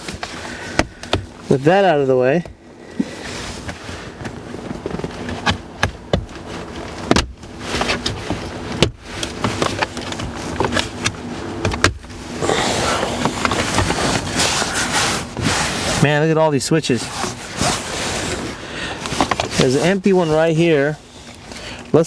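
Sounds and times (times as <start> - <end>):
rubbing scrape: 7.5 - 16.2, 16.9 - 20.6.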